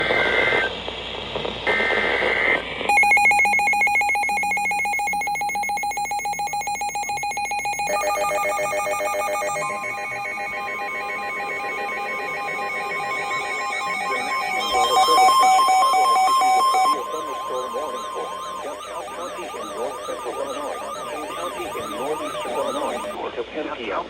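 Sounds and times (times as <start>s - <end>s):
pulsing electronic attention tone: 2.9s - 23.2s
higher electronic tone: 7.0s - 23.2s
buzzy digital header bursts: 7.4s - 23.2s.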